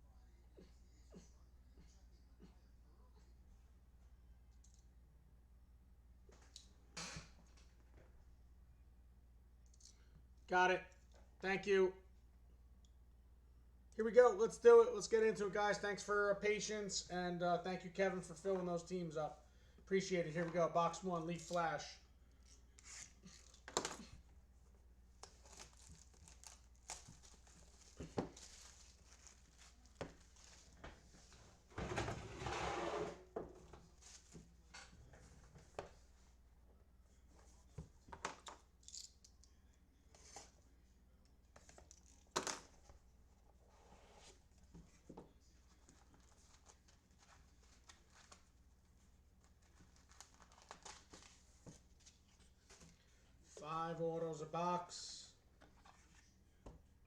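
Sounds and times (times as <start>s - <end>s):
plastic wrapper crinkling and tearing: 25.2s - 30.7s, 49.4s - 51.4s.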